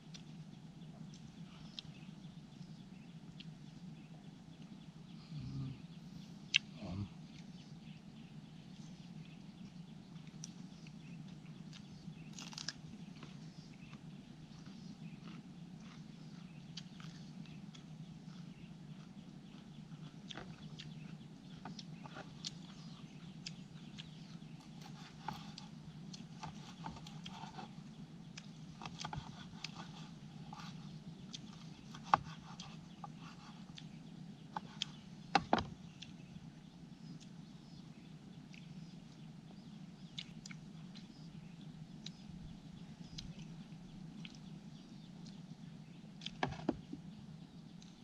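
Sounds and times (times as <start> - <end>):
steady low hum: 0.0 - 48.0
person chewing and crunching: 11.7 - 34.0.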